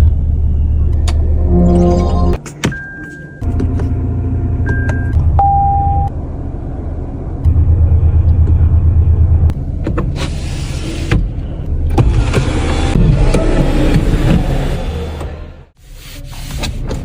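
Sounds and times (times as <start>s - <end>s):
vehicle engine rumble: 0.0s - 15.8s
short electronic beeps: 4.7s - 6.1s.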